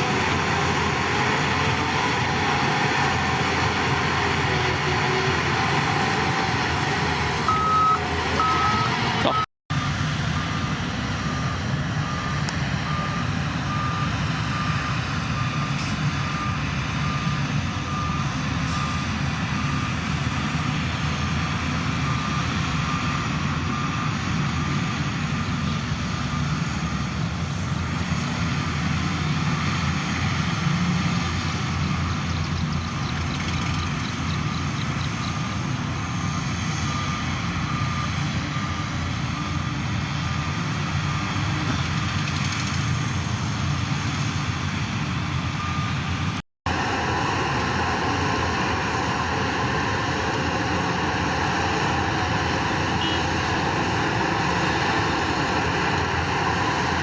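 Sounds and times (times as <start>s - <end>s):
heavy diesel machinery running: 0.0s - 57.0s
faint repeating beep: 7.5s - 9.5s.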